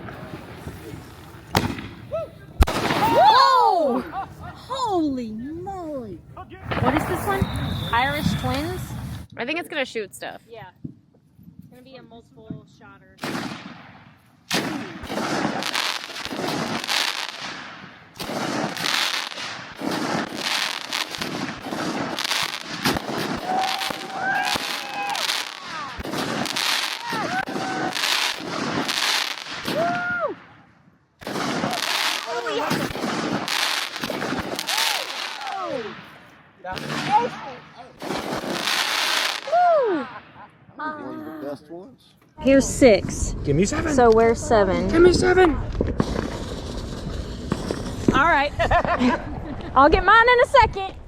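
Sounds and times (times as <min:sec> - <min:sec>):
firework crackling and popping: 0:00.0 - 0:03.5, 0:06.6 - 0:09.3, 0:13.2 - 0:39.7, 0:43.1 - 0:51.0
firework report: 0:00.0 - 0:10.0, 0:12.3 - 0:40.8, 0:42.4 - 0:51.0.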